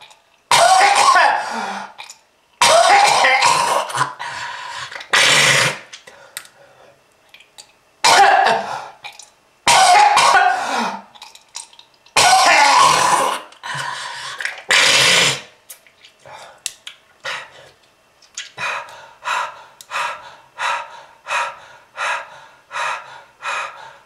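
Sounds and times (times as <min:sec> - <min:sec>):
person coughing harshly: 0:00.5 - 0:01.7, 0:02.6 - 0:04.2, 0:08.0 - 0:08.8, 0:09.7 - 0:11.1, 0:12.2 - 0:13.5.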